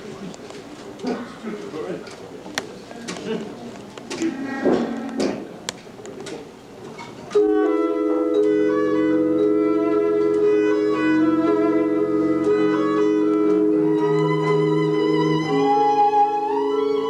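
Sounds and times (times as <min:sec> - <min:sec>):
jazz orchestra playing: 0:07.4 - 0:17.0.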